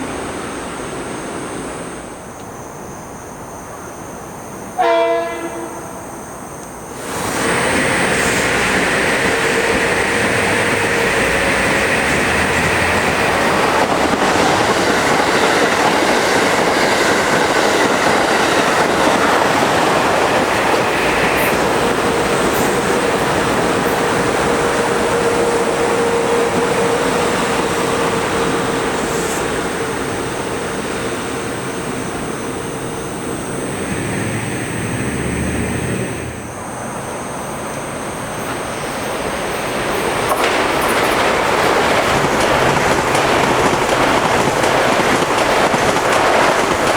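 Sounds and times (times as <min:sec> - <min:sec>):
train wheels rushing on rail: 0:00.0 - 0:46.9
steady whine: 0:28.2 - 0:39.4.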